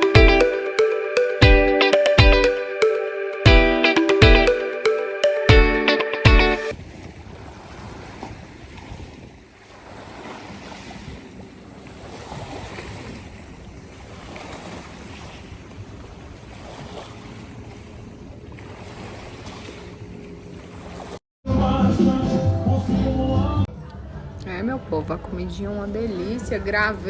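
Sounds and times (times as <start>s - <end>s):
lake water lapping: 6.6s - 21.2s, 25.3s - 27.0s
wind on microphone: 6.7s - 17.8s.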